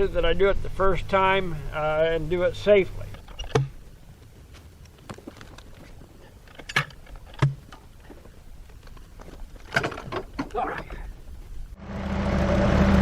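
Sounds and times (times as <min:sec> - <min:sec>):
low engine hum: 0:11.3 - 0:13.0.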